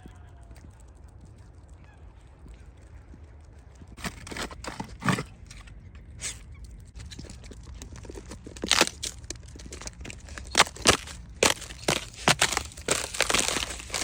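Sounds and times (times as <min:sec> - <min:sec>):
footsteps crunching on frozen ground: 0:07.0 - 0:14.0.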